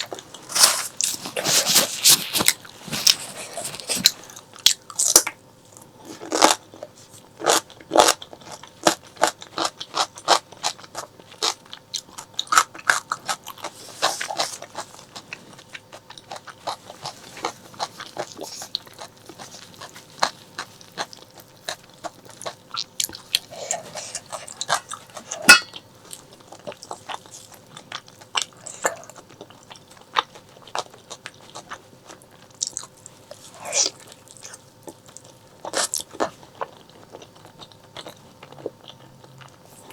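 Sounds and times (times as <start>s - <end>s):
wet chewing and mouth clicks: 0.0s - 39.9s.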